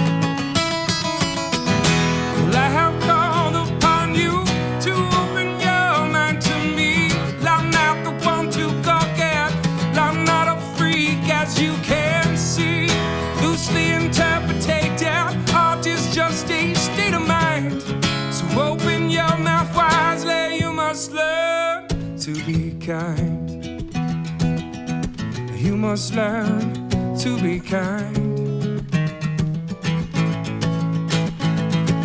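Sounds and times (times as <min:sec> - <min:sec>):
guitar lead melody with bends: 0:00.0 - 0:22.2
strummed acoustic guitar chords: 0:00.0 - 0:32.0.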